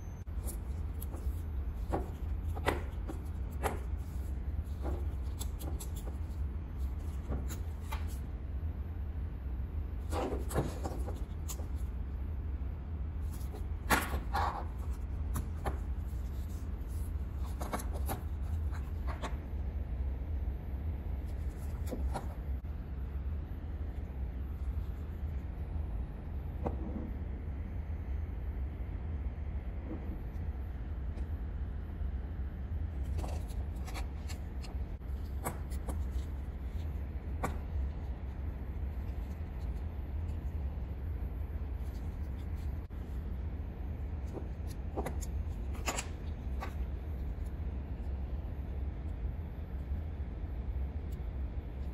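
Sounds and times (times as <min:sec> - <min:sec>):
steady low hum: 0:00.0 - 0:51.9.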